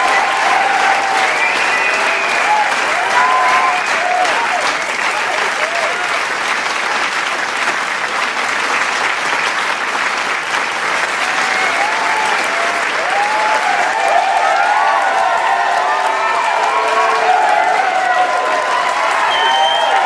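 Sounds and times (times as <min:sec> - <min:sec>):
cheers and whoops: 0:00.0 - 0:06.2, 0:11.2 - 0:20.0
crowd applauding: 0:00.0 - 0:20.0.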